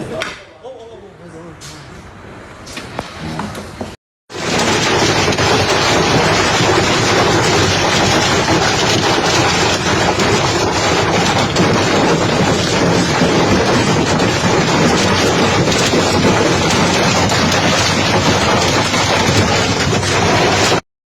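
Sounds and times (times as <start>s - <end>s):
heavy hail clattering: 4.3s - 20.8s.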